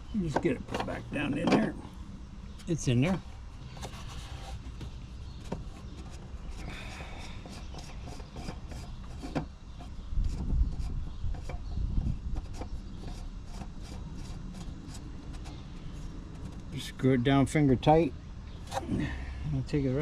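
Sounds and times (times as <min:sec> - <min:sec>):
hands rubbing and scraping cap: 0:03.7 - 0:09.5.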